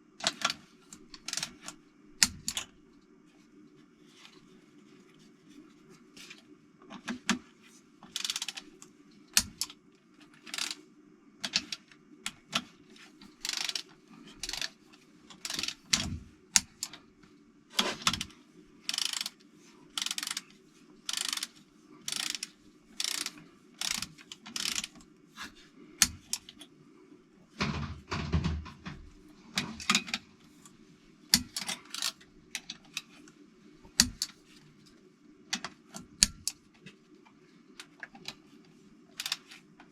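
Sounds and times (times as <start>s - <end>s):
ratchet wrench clicking: 8.2s - 8.6s, 10.5s - 10.8s, 13.4s - 14.7s, 15.4s - 16.0s, 18.9s - 19.4s, 20.0s - 20.4s, 21.1s - 25.0s, 31.4s - 32.2s, 39.2s - 39.4s.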